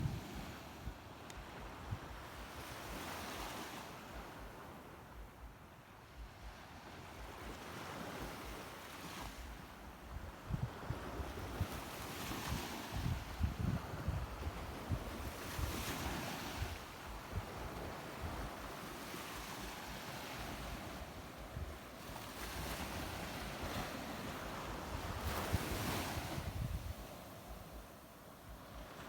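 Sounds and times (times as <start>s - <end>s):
wind buffeting microphone: 0.0s - 29.0s
sea waves washing in: 6.2s - 29.0s.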